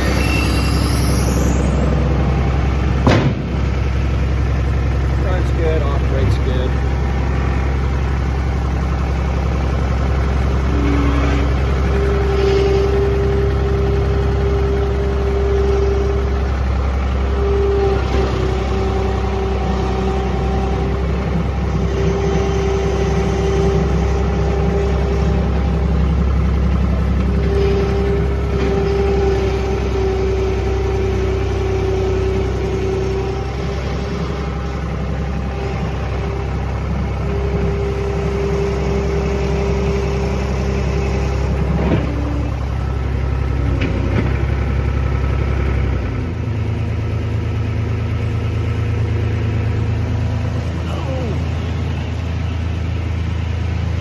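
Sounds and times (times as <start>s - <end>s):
high-pitched whine: 0.0s - 3.0s
diesel engine running: 0.0s - 54.0s.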